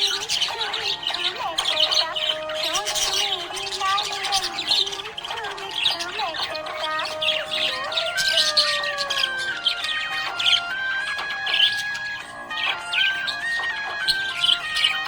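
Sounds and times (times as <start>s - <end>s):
budgerigars chirping: 0.0s - 15.0s
song with gliding sung notes: 0.0s - 15.0s.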